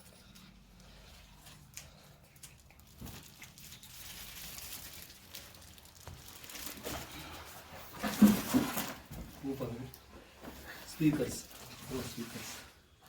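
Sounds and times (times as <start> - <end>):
packaging crinkling: 1.6 - 7.4.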